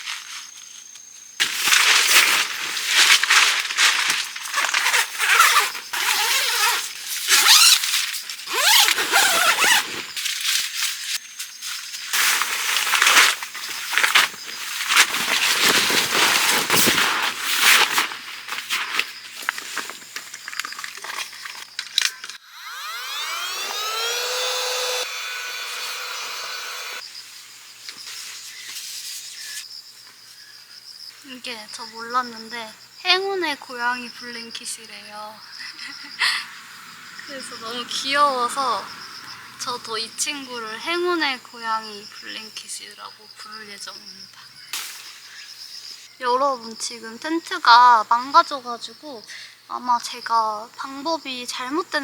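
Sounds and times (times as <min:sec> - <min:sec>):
crickets chirping: 0:00.0 - 0:23.4, 0:27.0 - 0:52.0
nylon fabric rustling: 0:01.4 - 0:11.2, 0:11.8 - 0:20.2
gliding squeaks: 0:04.5 - 0:10.2
small motor whine: 0:21.4 - 0:27.1, 0:35.5 - 0:40.7.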